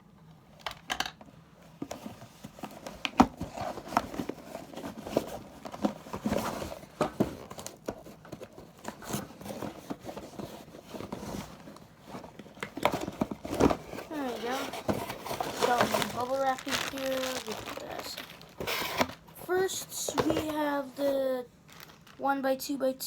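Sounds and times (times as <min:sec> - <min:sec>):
rustling tape and packaging: 0:01.7 - 0:22.3
scissors snipping package: 0:12.7 - 0:19.2.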